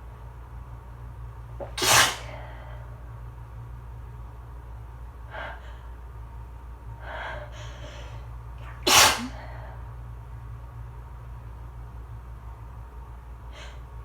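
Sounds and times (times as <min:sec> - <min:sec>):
person sneezing: 0:01.6 - 0:02.6, 0:08.7 - 0:09.6
person breathing noisily: 0:07.0 - 0:08.3.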